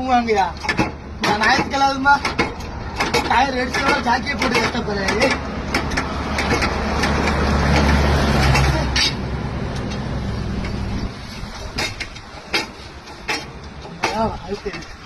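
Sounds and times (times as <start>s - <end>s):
large vehicle engine rumbling: 0.0s - 15.0s
sharp knocks: 0.6s - 9.2s.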